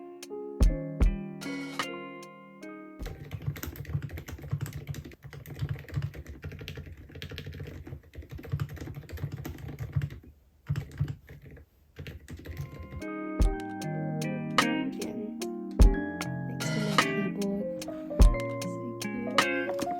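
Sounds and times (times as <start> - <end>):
mechanical keyboard typing: 3.0 - 13.7, 18.2 - 19.9.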